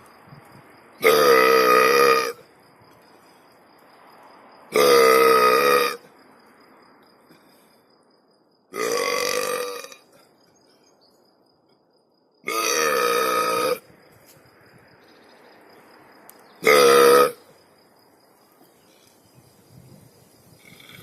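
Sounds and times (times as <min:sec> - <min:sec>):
person burping: 0:01.0 - 0:02.4, 0:04.8 - 0:06.0, 0:08.8 - 0:10.1, 0:12.5 - 0:13.8, 0:16.6 - 0:17.4.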